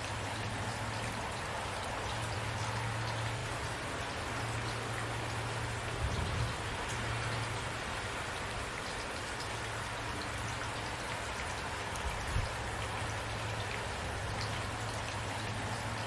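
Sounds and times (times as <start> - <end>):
steady rain falling: 0.0 - 16.0.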